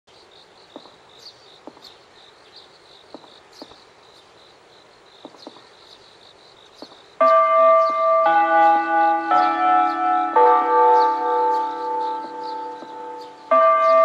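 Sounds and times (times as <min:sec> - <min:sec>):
insects chirping: 0:00.1 - 0:14.0.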